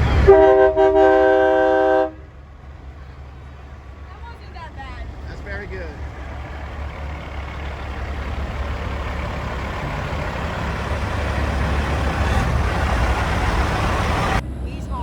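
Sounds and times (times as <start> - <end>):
truck driving past: 0.0 - 15.0.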